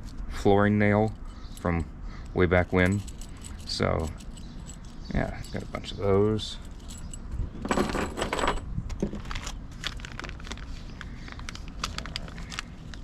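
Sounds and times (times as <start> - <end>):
metal nails clinking: 2.6 - 8.7.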